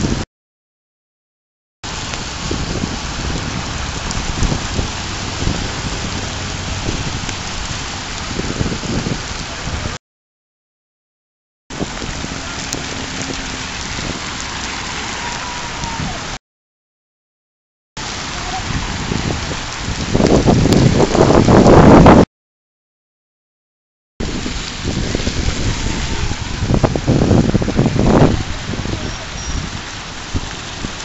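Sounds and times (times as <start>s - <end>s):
steady rain falling: 1.9s - 10.0s, 11.7s - 16.4s, 18.0s - 22.2s, 24.2s - 31.0s.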